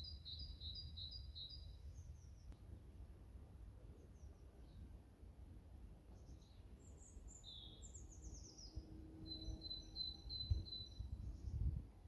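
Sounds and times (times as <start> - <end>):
songbirds singing: 0.0 - 2.6, 6.1 - 11.9.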